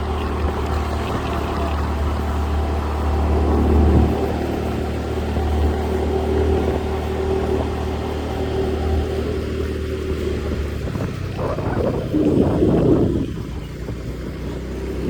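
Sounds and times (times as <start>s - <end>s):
road noise: 0.0s - 15.0s
vehicle engine hum: 0.0s - 15.0s.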